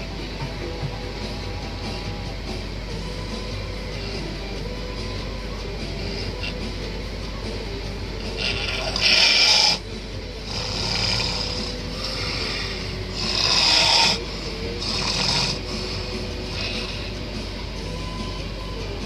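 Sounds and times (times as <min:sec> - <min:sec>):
faint steady hum: 0:00.0 - 0:19.0
person snoring: 0:08.3 - 0:09.8, 0:10.4 - 0:17.3.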